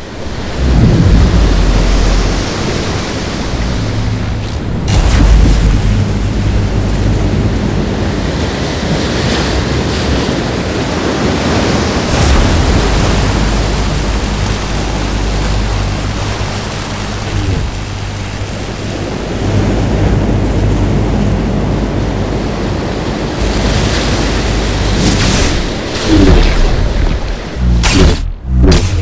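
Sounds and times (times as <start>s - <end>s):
steady low hum: 0.0s - 8.6s, 12.1s - 29.0s
rushing roar: 0.0s - 9.0s, 11.4s - 21.9s, 23.1s - 29.0s
whoosh: 0.2s - 7.6s, 24.5s - 29.0s.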